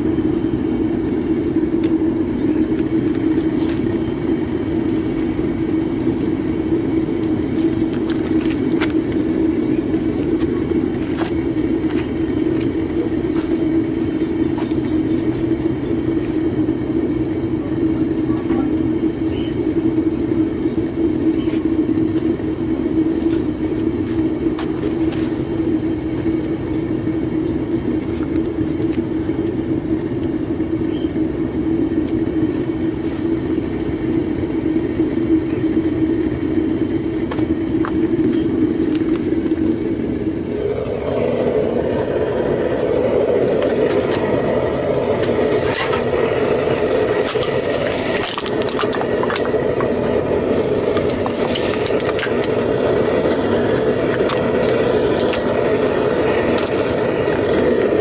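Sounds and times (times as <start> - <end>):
crackles and clicks: 0.0 - 16.5, 34.8 - 58.0
burner flame rushing: 0.0 - 58.0
low hum: 0.0 - 58.0.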